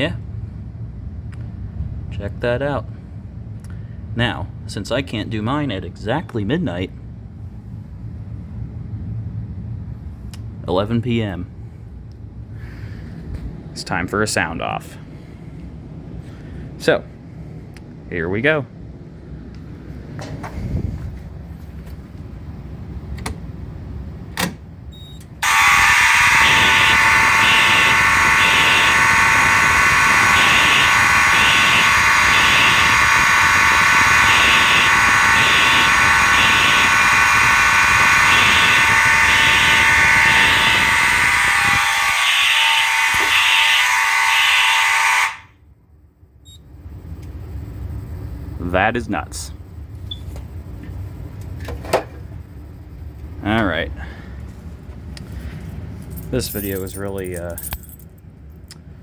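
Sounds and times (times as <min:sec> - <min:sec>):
fire alarm horns blaring: 0:25.3 - 0:45.8, 0:55.4 - 0:58.0.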